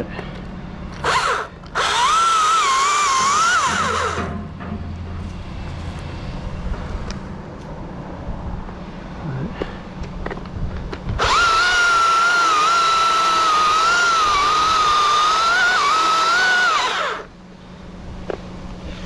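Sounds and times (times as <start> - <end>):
low steady engine hum: 0.0 - 19.0
chainsaw cutting at full throttle: 1.0 - 4.2, 11.2 - 17.3.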